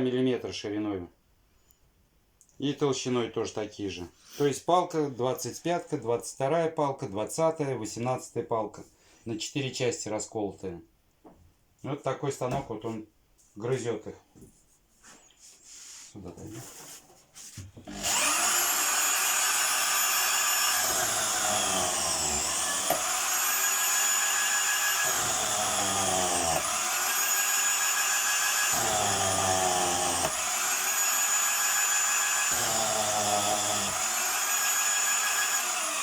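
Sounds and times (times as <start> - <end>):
cutters grinding wood: 17.8 - 36.0
machine motor whining: 17.9 - 36.0.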